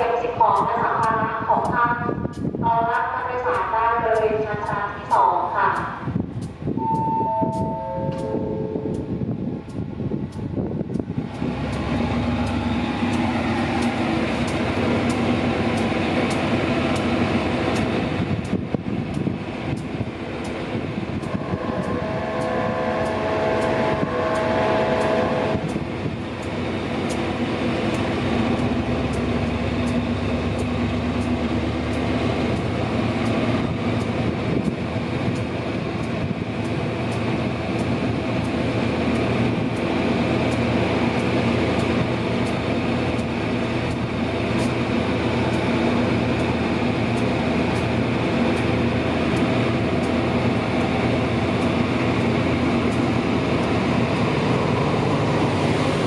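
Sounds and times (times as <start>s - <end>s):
diesel locomotive engine running: 0.0s - 56.0s
wheels clicking over rail joints: 0.2s - 56.0s
multi-tone train horn: 6.8s - 9.3s, 21.2s - 25.8s.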